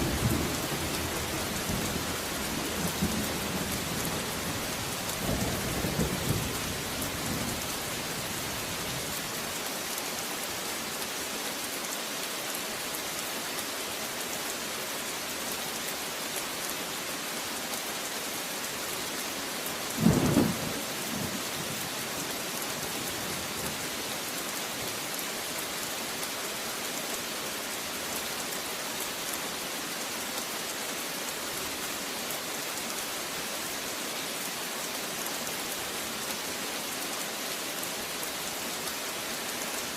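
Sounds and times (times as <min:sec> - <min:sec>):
steady rain hissing: 0:00.0 - 0:39.9
low thunder rumble: 0:20.0 - 0:21.8.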